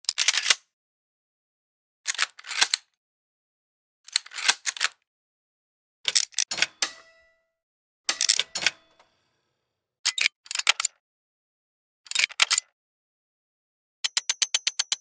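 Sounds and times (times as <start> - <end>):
mechanical gear clicking: 6.1 - 7.4, 8.1 - 9.1.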